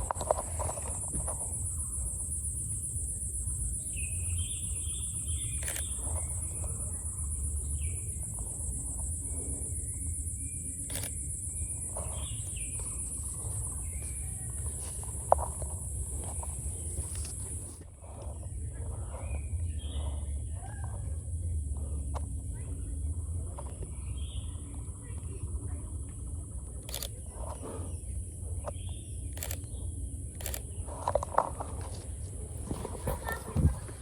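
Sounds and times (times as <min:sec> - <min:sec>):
high insect buzz: 0:00.0 - 0:17.8
bird chirps and calls: 0:03.4 - 0:09.3
sharp clicks: 0:05.6 - 0:06.4, 0:10.8 - 0:11.2.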